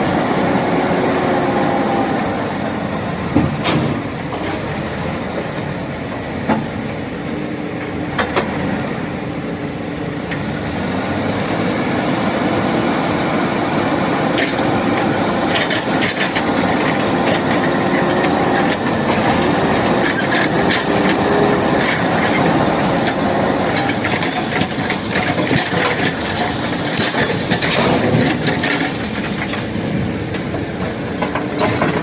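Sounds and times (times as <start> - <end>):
diesel engine running under load: 0.0 - 32.0
knocks and clatter: 15.5 - 32.0.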